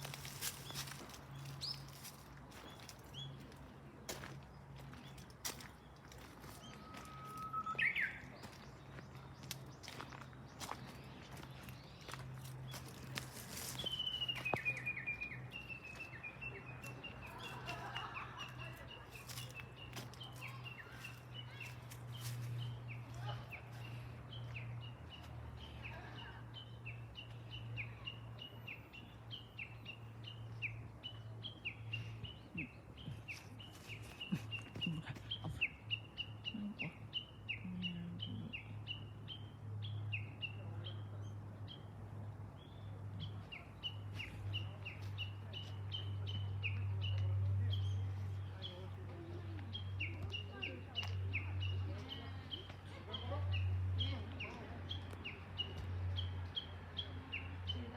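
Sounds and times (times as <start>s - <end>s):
bird calling high notes: 6.8s - 8.2s.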